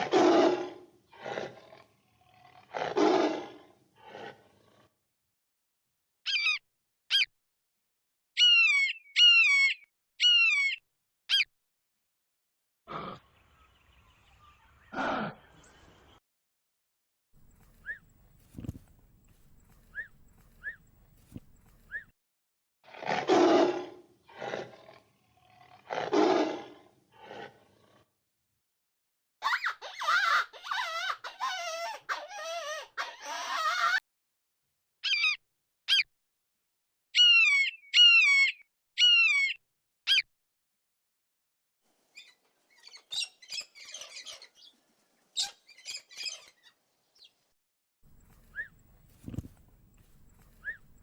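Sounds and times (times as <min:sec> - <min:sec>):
large animal roaring: 0:00.0 - 0:05.0, 0:22.9 - 0:28.1
small animal chirps and squeaks: 0:06.3 - 0:07.3, 0:08.4 - 0:11.5, 0:17.5 - 0:22.1, 0:35.0 - 0:36.1, 0:37.2 - 0:40.2, 0:42.1 - 0:44.7, 0:45.4 - 0:46.8, 0:48.1 - 0:51.0.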